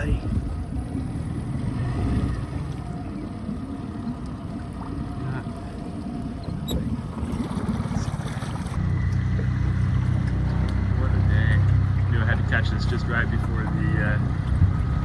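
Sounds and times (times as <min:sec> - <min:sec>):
wind noise: 0:00.0 - 0:09.0, 0:13.8 - 0:15.0
outboard motor running: 0:00.0 - 0:15.0
water noise: 0:00.0 - 0:15.0.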